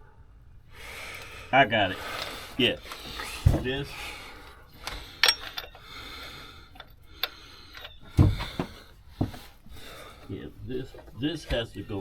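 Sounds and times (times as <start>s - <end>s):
metal parts clicking and knocking: 4.8s - 5.8s.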